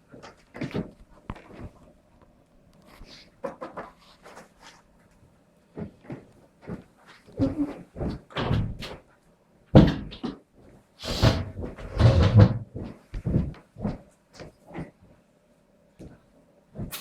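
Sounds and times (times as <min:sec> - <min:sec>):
rustling and scraping: 0:02.8 - 0:05.2
knocks thumps and clatter: 0:09.8 - 0:10.4.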